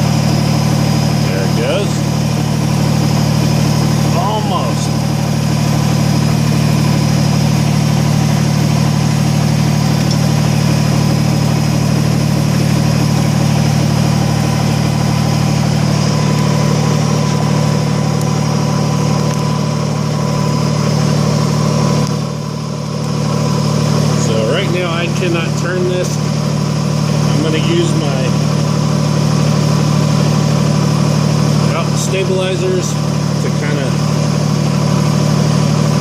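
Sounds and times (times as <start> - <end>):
tractor diesel engine running: 0.0 - 36.0.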